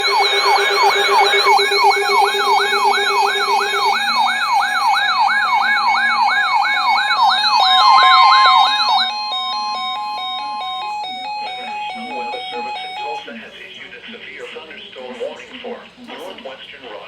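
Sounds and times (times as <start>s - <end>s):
stepped electronic tones: 0.0s - 13.1s
electronic siren yelping: 0.0s - 13.2s.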